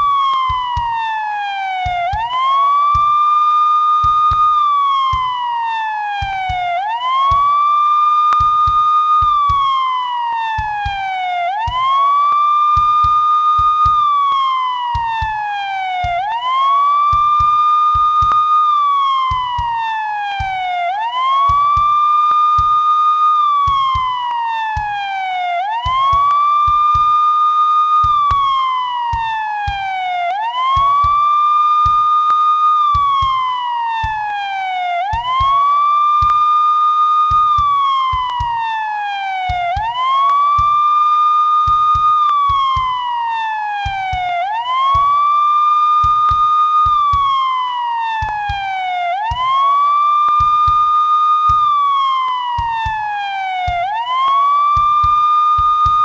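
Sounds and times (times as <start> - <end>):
police siren wailing: 0.0 - 56.0.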